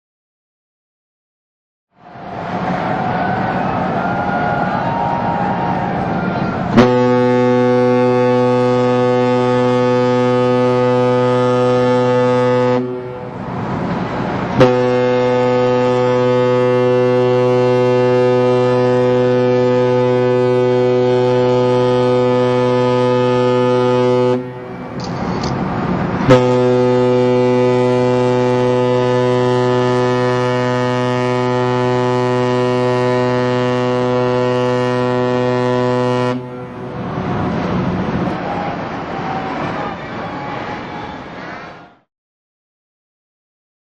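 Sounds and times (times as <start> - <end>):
deep ship's whistle blasts: 4.0 - 13.4, 14.6 - 25.1, 26.2 - 37.0.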